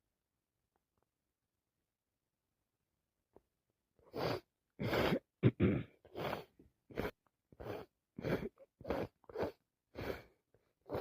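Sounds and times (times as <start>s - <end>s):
noisy breathing through stuffy nose: 6.1s - 11.0s.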